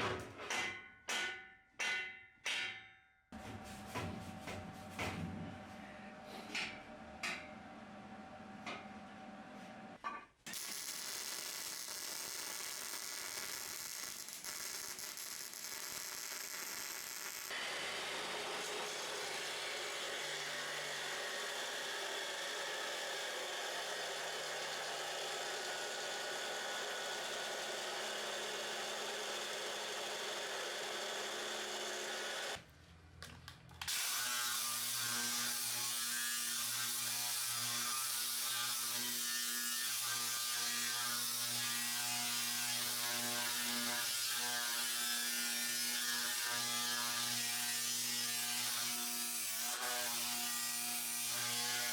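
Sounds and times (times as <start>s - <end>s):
welder arc crackling: 10.5s - 17.5s.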